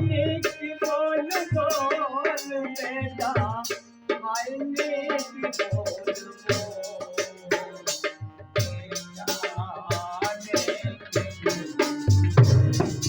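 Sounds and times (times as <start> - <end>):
low beats: 0.0 - 0.5, 12.1 - 13.0
hand drum strikes: 11.2 - 13.0.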